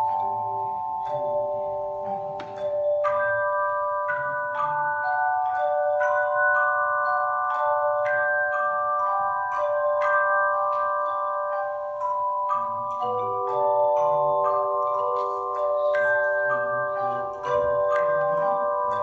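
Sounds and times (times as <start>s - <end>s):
handbell choir playing: 0.0s - 19.0s.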